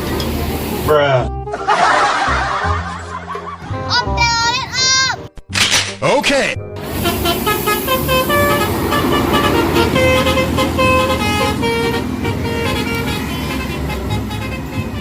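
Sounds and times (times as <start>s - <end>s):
bus engine rumbling: 0.0s - 5.0s, 6.6s - 15.0s
bus horns playing a tune: 6.8s - 15.0s.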